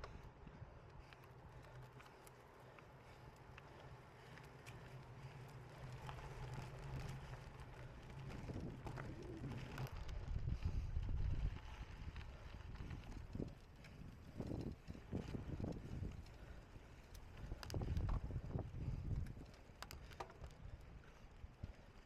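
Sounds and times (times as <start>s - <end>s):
bike rattling over rough ground: 0.0s - 22.0s
wind rumbling on microphone: 4.2s - 21.8s.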